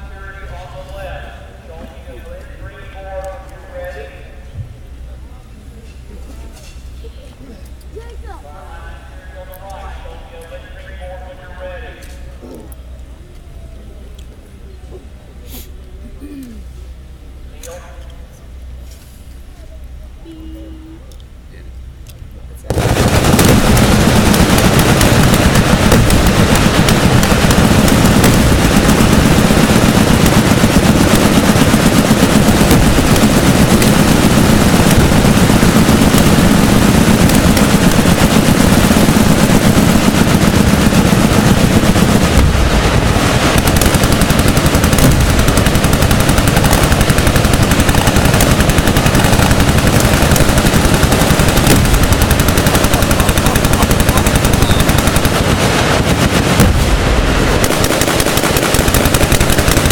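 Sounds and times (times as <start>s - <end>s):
machine guns firing bursts: 22.7s - 59.9s.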